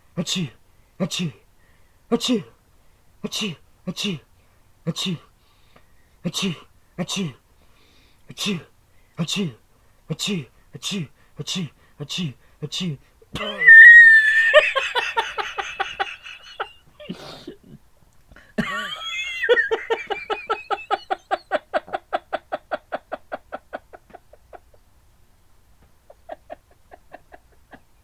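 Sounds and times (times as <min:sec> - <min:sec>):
man laughing hard: 0:13.4 - 0:17.8, 0:18.6 - 0:24.7, 0:26.1 - 0:27.8.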